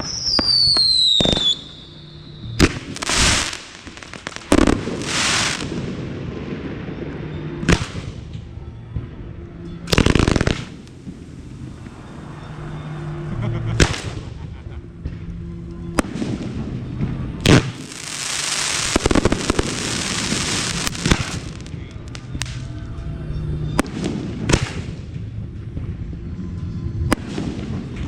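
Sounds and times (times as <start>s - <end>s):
faint music: 0.0s - 28.0s
fireworks crackling hiss: 2.6s - 6.1s, 9.9s - 11.7s, 17.4s - 22.6s.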